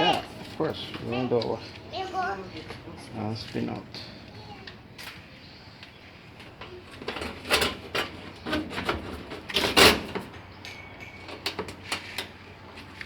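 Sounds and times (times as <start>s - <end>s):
knocks and clattering of handling: 6.4s - 12.9s.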